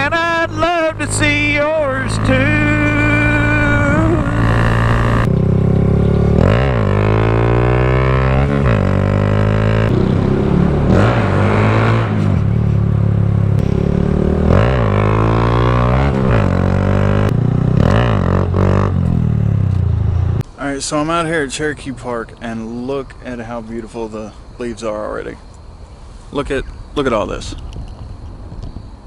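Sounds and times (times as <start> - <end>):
motorcycle engine revving: 0.0 - 20.4.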